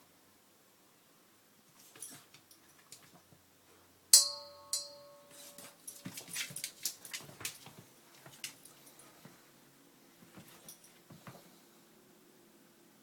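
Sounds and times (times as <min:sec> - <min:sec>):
metal object clinking: 0:04.2 - 0:07.1
light clicks and taps: 0:05.6 - 0:09.4.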